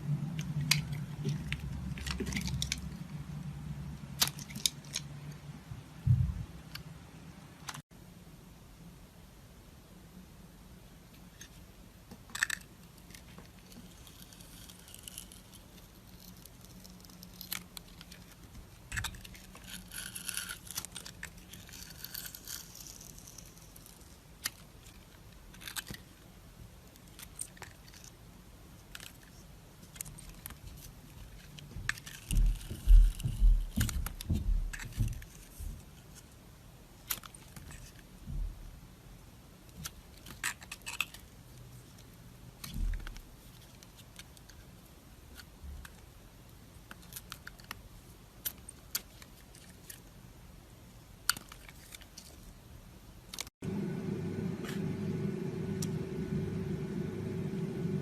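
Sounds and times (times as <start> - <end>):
crisp clicks and crackles: 0.3 - 3.2, 11.2 - 36.4, 37.0 - 38.2, 39.6 - 53.8
low thumps: 6.1 - 6.5.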